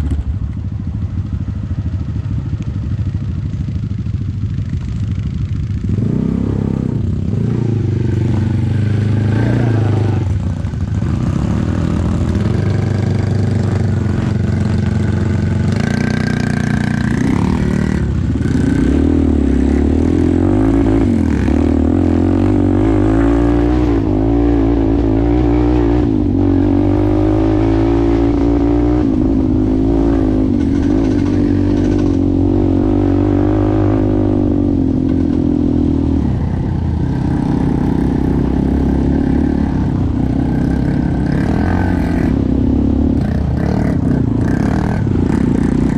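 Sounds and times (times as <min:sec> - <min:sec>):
atv engine running: 0:00.0 - 0:45.9.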